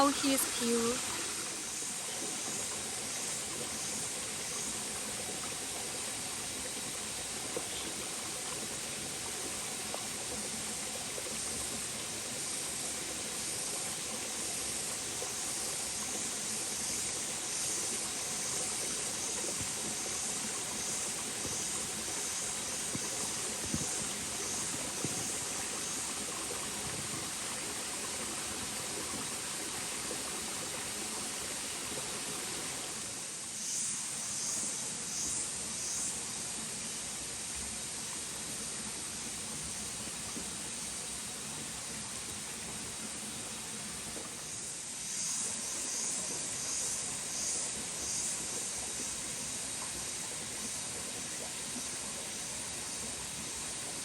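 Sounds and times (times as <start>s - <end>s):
water rushing: 0.0s - 33.5s.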